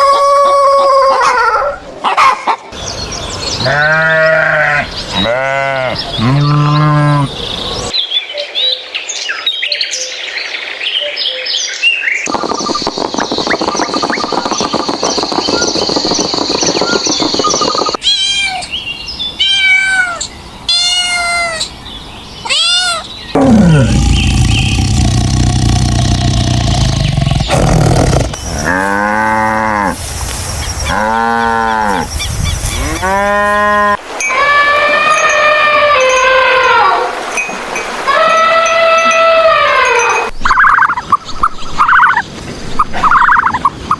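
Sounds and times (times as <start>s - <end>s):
long low falling animal call: 0.0s - 1.9s, 3.6s - 7.4s, 22.5s - 30.0s, 32.8s - 37.2s, 38.1s - 41.0s
high rising and falling animal calls: 23.4s - 28.8s
drawn-out low animal calls: 23.4s - 28.9s.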